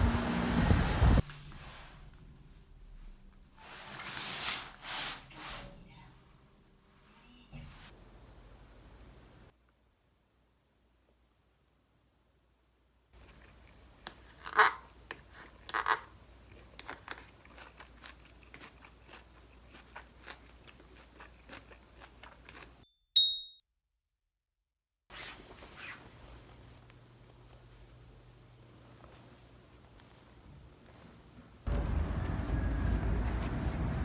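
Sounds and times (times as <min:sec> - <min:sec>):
soft rustling: 0:28.8 - 0:34.0.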